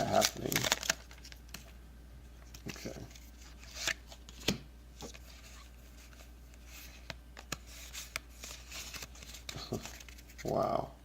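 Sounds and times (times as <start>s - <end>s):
foil pack and cards rustling: 0.0s - 1.8s, 2.4s - 10.8s.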